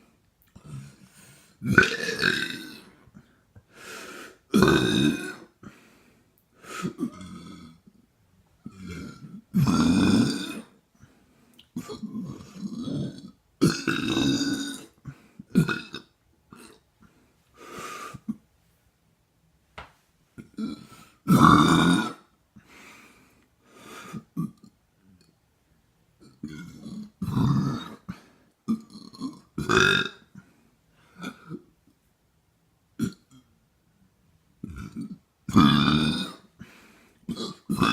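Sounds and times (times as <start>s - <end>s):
person burping: 1.6s - 3.0s, 4.5s - 5.6s, 6.8s - 7.9s, 8.6s - 10.8s, 11.7s - 16.9s, 20.4s - 22.3s, 24.2s - 24.8s, 26.2s - 30.4s, 31.2s - 31.7s, 33.0s - 33.5s, 34.6s - 36.5s, 37.3s - 37.9s.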